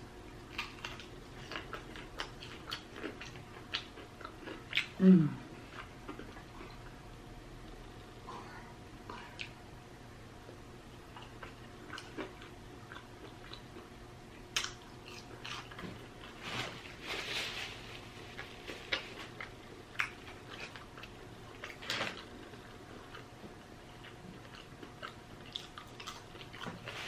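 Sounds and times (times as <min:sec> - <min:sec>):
person chewing: 0:00.4 - 0:07.0, 0:10.4 - 0:16.4, 0:18.3 - 0:27.0.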